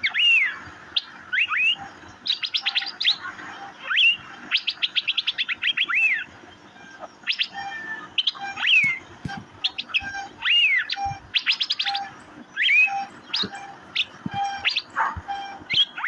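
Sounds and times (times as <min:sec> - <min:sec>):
bird calling with sharp notes: 0:00.0 - 0:16.0
loud rising and falling whistles: 0:07.3 - 0:16.0.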